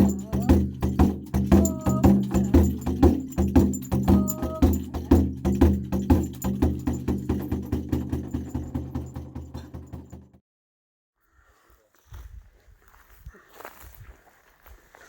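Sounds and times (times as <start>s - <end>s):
percussive beat: 0.0s - 10.4s.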